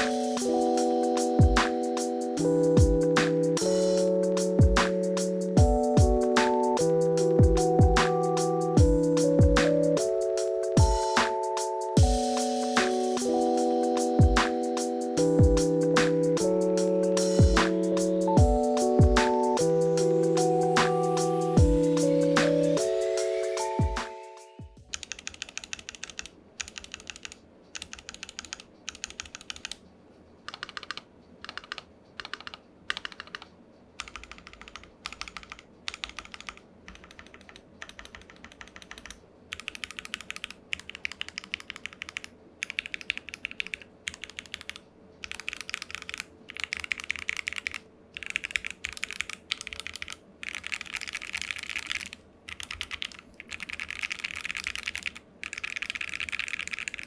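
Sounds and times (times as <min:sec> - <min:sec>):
mechanical keyboard typing: 0:24.8 - 0:29.8, 0:30.5 - 0:57.0.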